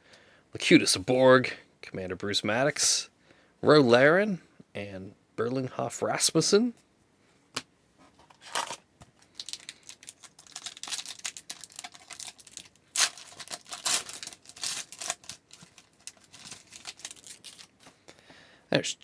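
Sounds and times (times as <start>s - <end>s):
wrapper tearing and crinkling: 8.4s - 17.9s.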